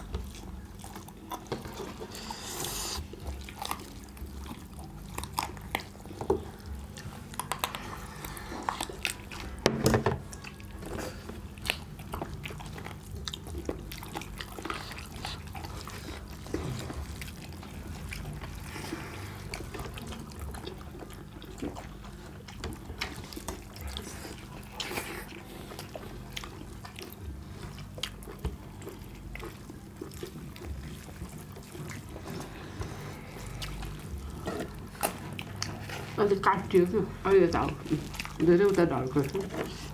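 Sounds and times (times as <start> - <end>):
wet chewing and squelching: 0.0 - 39.9.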